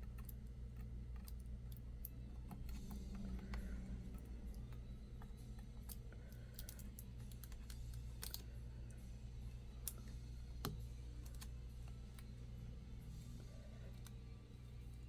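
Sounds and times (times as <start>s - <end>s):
small parts clicking and tapping: 0.0s - 9.0s
low steady hum: 0.0s - 15.0s.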